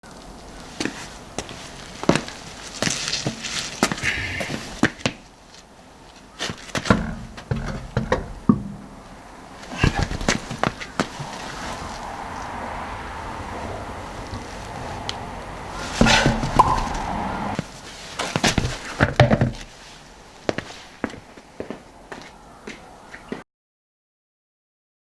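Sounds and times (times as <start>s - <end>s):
sharp knocks and clatters: 6.8s - 9.0s, 15.8s - 17.3s.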